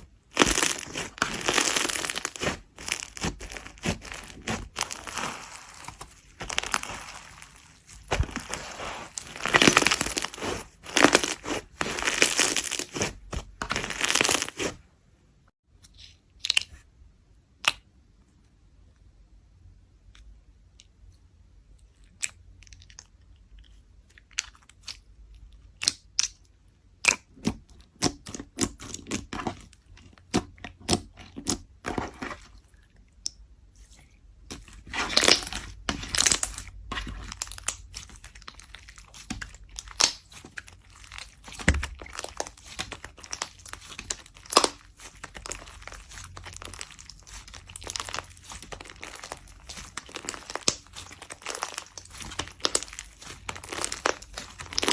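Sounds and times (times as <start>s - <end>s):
slime crackling pops: 0.3s - 14.7s, 39.2s - 40.4s, 41.1s - 54.9s.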